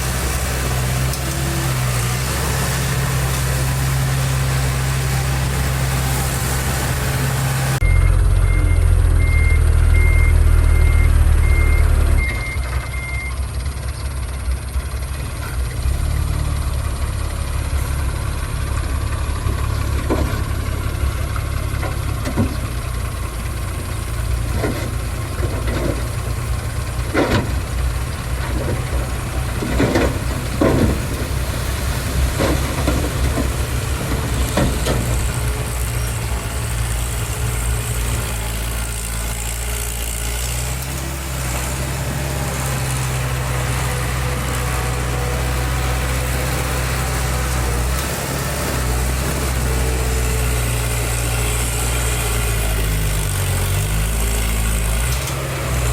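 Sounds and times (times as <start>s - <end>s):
diesel machinery engine rumble: 0.0s - 55.9s
reversing beeper: 7.8s - 13.5s
metallic clanks and knocks: 19.5s - 20.7s, 24.4s - 31.4s, 32.3s - 35.5s.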